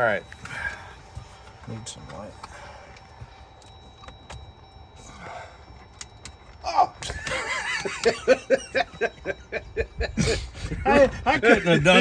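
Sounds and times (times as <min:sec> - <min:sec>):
person laughing hard: 0:07.0 - 0:12.0.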